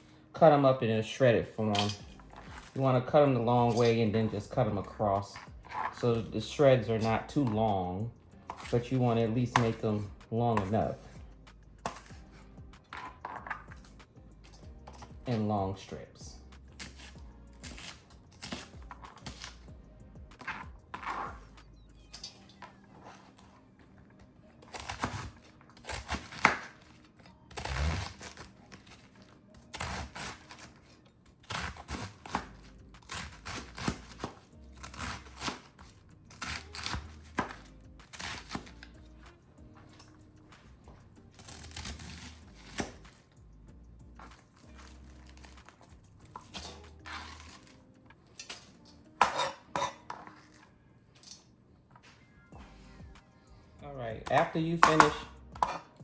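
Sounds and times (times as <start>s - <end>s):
knife slicing cabbage: 16.8s - 19.6s, 24.7s - 38.9s, 41.3s - 43.2s, 44.3s - 47.8s.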